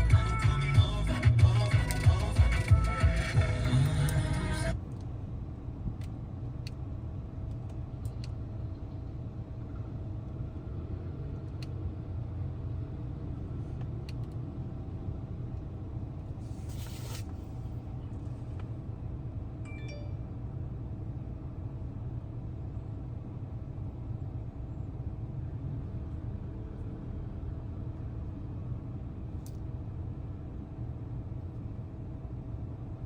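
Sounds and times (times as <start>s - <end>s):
vehicle rumble: 0.0s - 33.0s
short hiss: 16.4s - 17.4s.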